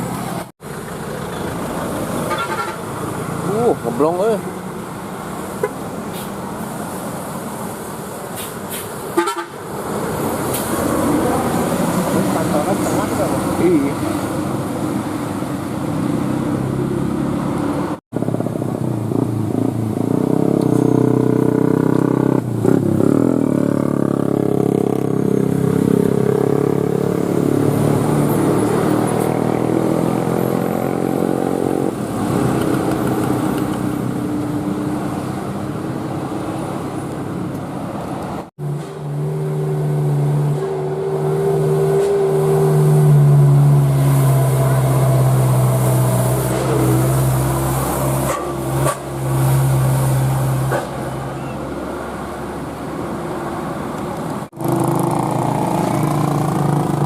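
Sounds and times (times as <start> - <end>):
bus horn tones: 2.3 - 2.9, 9.2 - 9.6.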